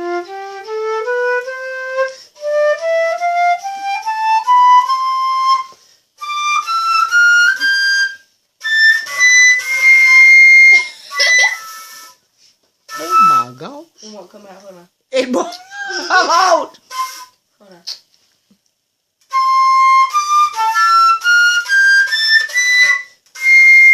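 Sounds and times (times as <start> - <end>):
flute playing rising scales: 0.0 - 12.2, 12.9 - 13.8, 16.9 - 17.4, 19.3 - 23.9.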